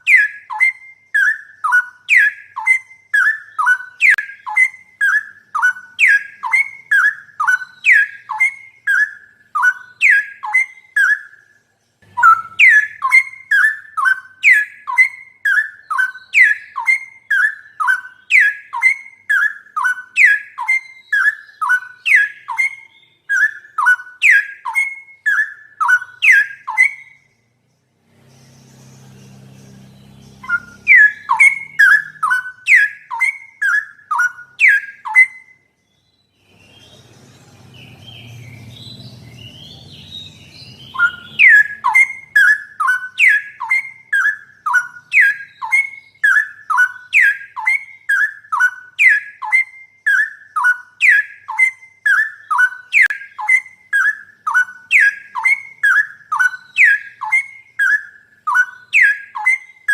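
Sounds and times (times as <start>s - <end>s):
bird singing whistled notes: 0.0s - 59.9s
faint low hum: 26.0s - 33.5s.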